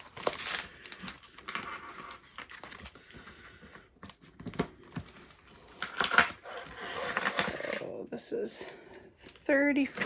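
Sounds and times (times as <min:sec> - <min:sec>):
plastic packaging rustling: 0:00.0 - 0:07.9.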